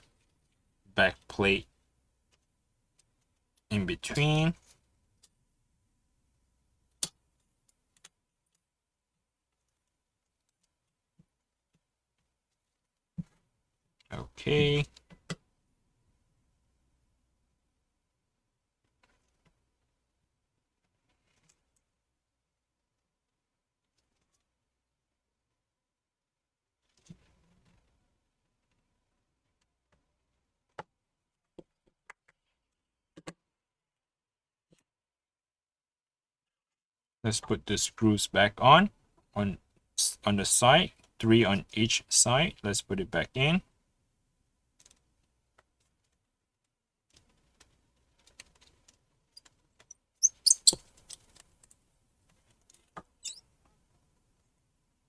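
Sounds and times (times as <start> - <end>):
short high squeaks: 50.2 - 51.2, 53.2 - 53.4.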